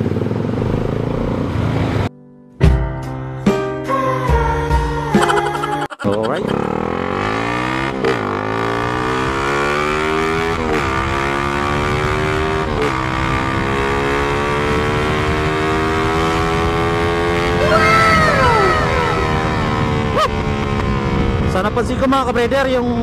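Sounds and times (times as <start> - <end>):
motorcycle accelerating through gears: 0.0 - 2.1, 6.5 - 17.6, 18.3 - 23.0
higher rising and falling sound: 17.4 - 20.8.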